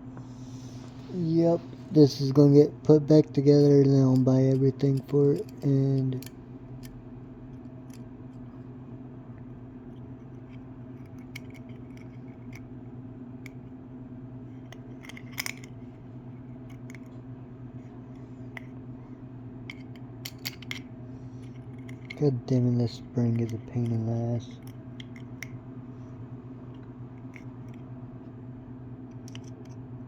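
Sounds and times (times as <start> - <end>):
steady low hum: 0.0 - 30.0
metal lighter parts clicking: 15.0 - 15.7.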